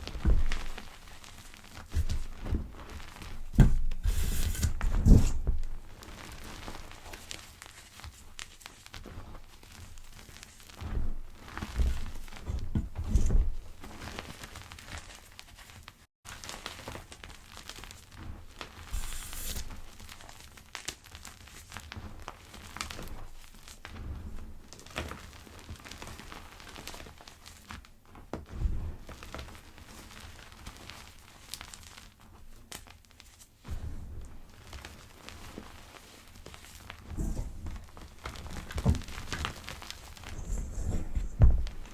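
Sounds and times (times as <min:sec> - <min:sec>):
dull thumps: 0:00.1 - 0:00.8, 0:01.9 - 0:05.9, 0:40.2 - 0:41.9.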